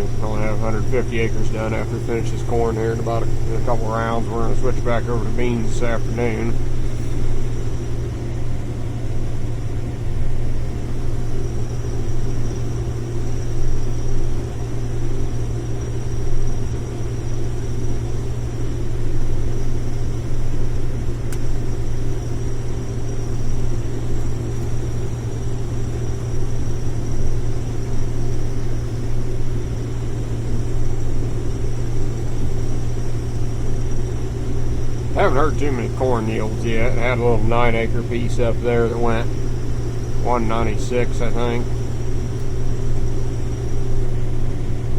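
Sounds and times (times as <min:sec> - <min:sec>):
combine harvester engine droning: 0:00.0 - 0:44.9
faint high whine: 0:00.0 - 0:44.9.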